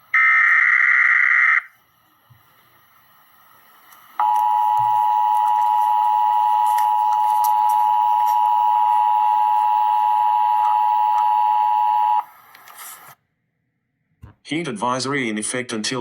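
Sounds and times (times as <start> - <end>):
harsh two-tone alarm tone: 0.2 - 1.7, 4.2 - 12.3.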